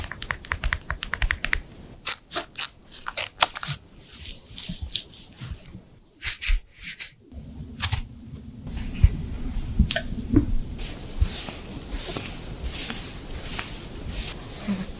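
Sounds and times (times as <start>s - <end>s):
wet wipes rustling: 2.3s - 5.8s, 10.8s - 14.9s.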